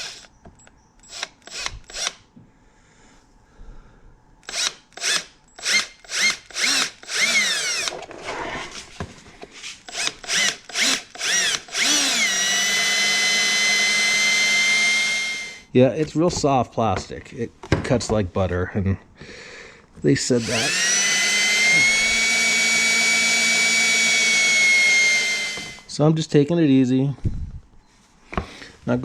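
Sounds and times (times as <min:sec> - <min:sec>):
power drill whining: 0:00.0 - 0:00.4, 0:01.0 - 0:02.2, 0:04.4 - 0:08.8, 0:09.8 - 0:15.7, 0:20.2 - 0:25.9.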